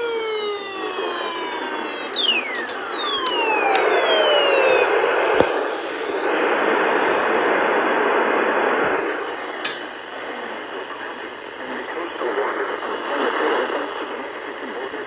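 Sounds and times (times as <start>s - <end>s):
radio static hiss: 0.0s - 15.0s
click: 2.5s - 3.9s.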